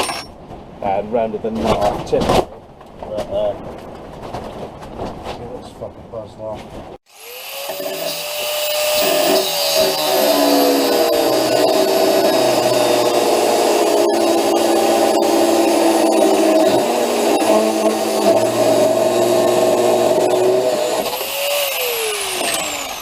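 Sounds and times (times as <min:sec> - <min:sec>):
angle grinder cutting bolt: 0:07.1 - 0:23.0.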